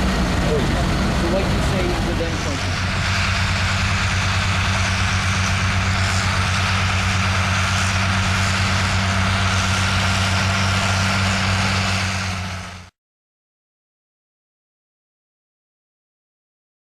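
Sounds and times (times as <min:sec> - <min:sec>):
tractor engine running: 0:00.0 - 0:12.9.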